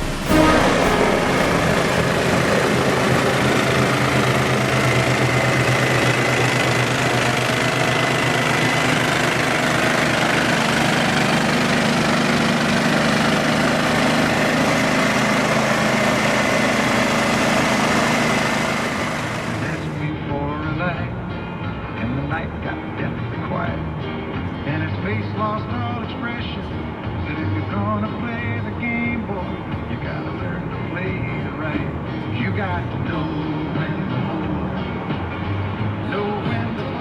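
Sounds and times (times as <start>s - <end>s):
engine idling: 0.0s - 20.0s.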